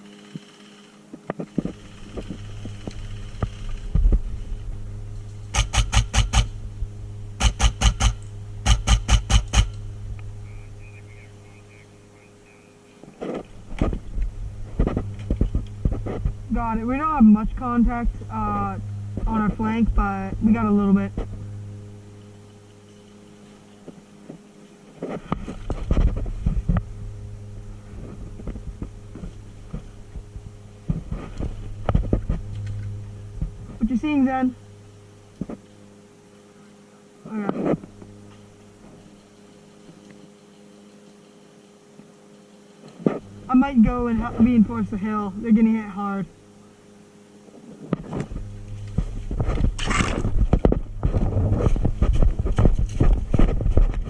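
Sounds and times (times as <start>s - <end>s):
electrical hum: 0.0s - 54.0s
airsoft gun shots: 5.5s - 6.6s, 7.4s - 9.8s.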